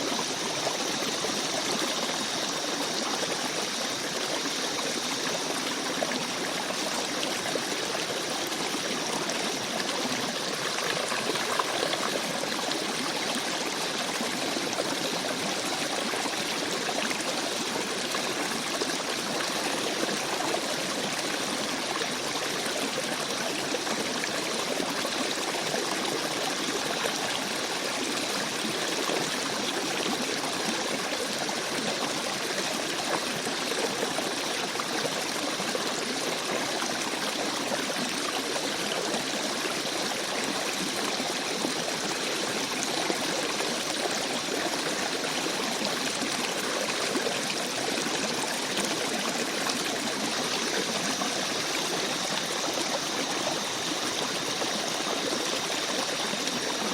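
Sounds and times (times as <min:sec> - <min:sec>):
stream babbling over rocks: 0:00.0 - 0:56.9.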